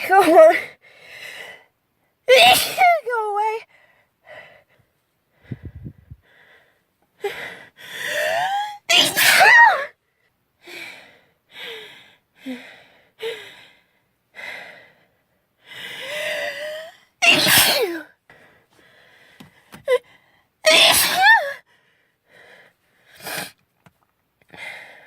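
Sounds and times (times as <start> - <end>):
girl sneezing: 2.3 - 3.1, 8.2 - 9.9, 17.2 - 18.1, 20.6 - 21.6
gasping breaths: 3.7 - 8.5, 18.3 - 20.5, 24.4 - 25.0.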